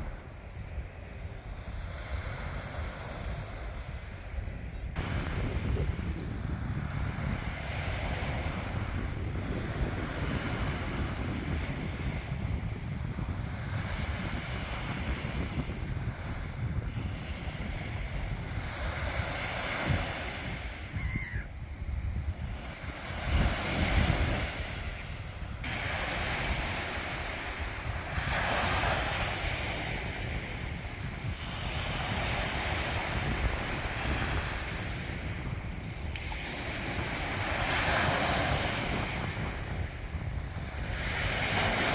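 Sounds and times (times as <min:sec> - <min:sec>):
waves breaking on beach: 0:00.0 - 0:41.9
wind buffeting microphone: 0:00.0 - 0:41.9.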